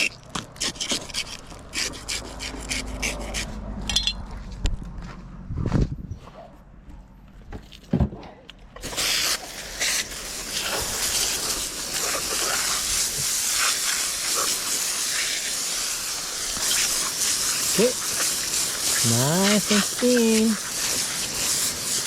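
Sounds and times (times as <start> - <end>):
running water spraying: 8.8 - 22.0.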